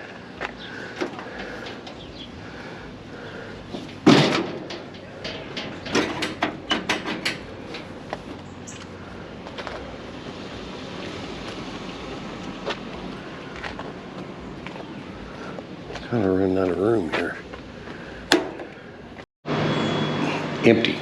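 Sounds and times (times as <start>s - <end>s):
scrap metal knocks and clatters: 0.9s - 2.3s, 3.2s - 8.3s.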